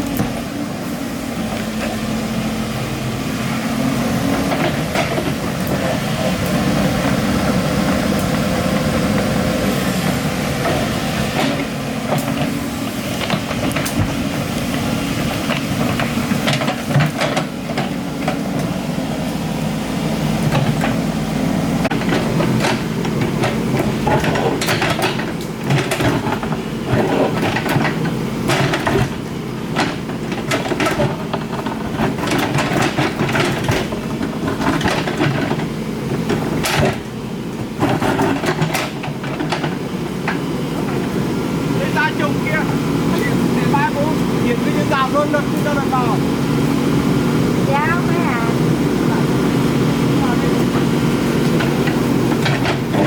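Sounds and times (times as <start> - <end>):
excavator diesel engine running: 0.0 - 53.0
metal clanking against rock: 21.8 - 35.7.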